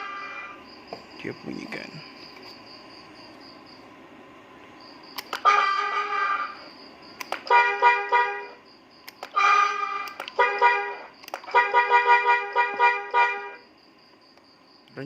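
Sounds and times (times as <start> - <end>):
multi-tone electronic horn blasts: 0.0 - 0.5, 5.3 - 6.7, 7.4 - 13.7
faint high whine: 0.0 - 11.2
click: 5.2 - 5.4, 7.2 - 7.5, 9.0 - 9.4, 10.0 - 10.4, 11.2 - 11.5.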